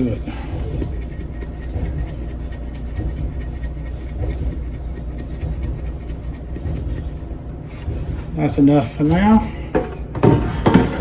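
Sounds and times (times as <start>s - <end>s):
seasoning rubbed over meat: 0.0s - 7.9s.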